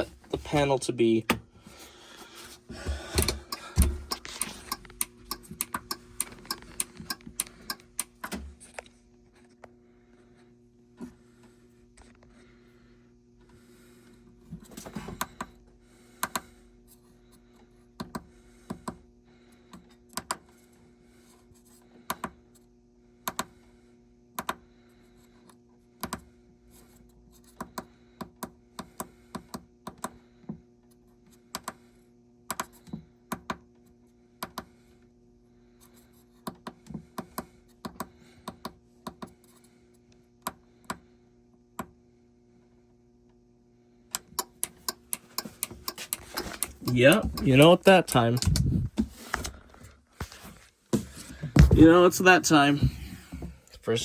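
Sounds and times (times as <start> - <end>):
low electrical hum: 0.0 - 54.0
sharp clicks: 44.2 - 48.8.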